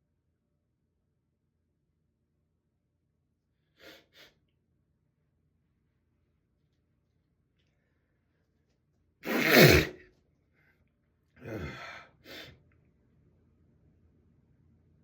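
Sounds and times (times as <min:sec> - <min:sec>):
person sneezing: 0:09.2 - 0:10.0.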